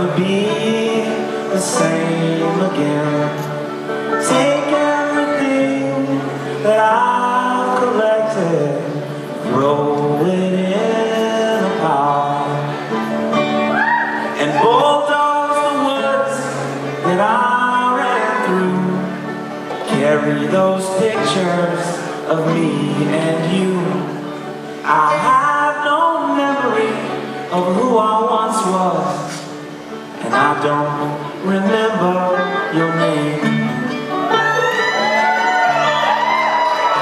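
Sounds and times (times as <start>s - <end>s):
men singing: 0.0s - 12.8s, 14.4s - 19.2s, 19.8s - 24.1s, 30.2s - 33.8s
folk-rock band playing live: 0.0s - 37.0s.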